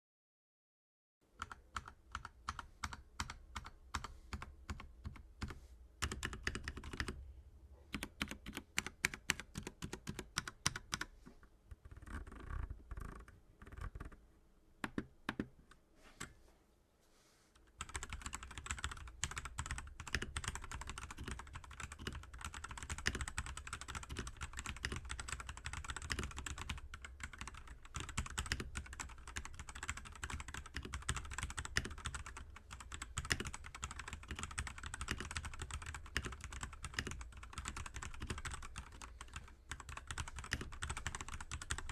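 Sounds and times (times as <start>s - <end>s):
mechanical keyboard typing: 1.4s - 7.2s, 7.9s - 11.1s, 11.8s - 14.2s, 17.8s - 41.9s.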